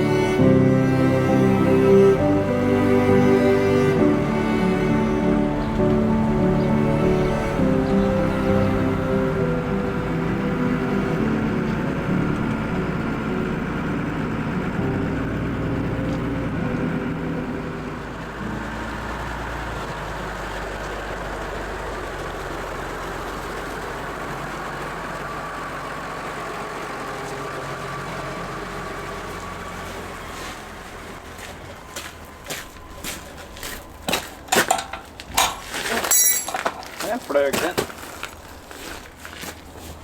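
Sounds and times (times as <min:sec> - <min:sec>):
music: 0:00.0 - 0:19.9
vehicle engine running: 0:00.0 - 0:35.2.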